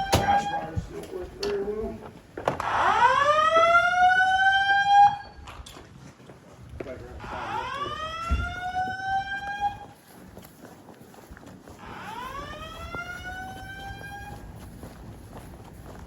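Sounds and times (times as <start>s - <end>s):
fire alarm whoop tone: 0.0s - 0.7s, 2.6s - 5.5s, 7.2s - 10.0s, 11.8s - 14.4s.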